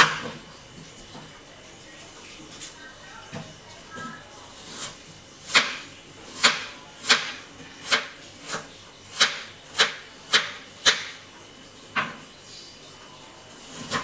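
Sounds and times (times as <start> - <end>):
knife cutting on a cutting board: 4.5 - 10.5, 13.6 - 14.0.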